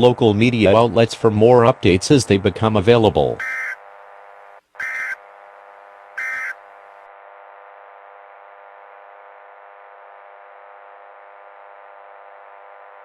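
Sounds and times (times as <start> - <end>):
warbling digital data tones: 3.4 - 3.8, 4.8 - 5.2, 6.2 - 6.6
electronic buzzing drone: 3.4 - 13.0.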